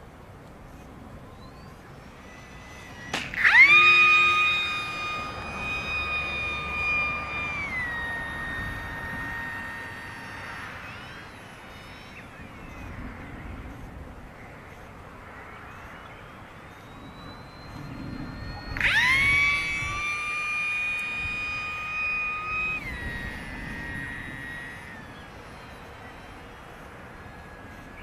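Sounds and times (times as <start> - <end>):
electric motor and propeller whining: 0.0 - 28.0
sharp click: 2.8 - 6.0.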